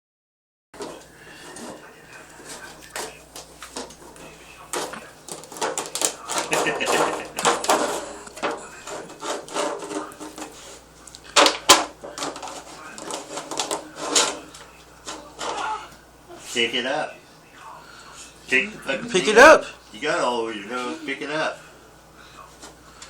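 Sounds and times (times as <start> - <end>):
dog pawing object on hard floor: 0.8 - 15.7.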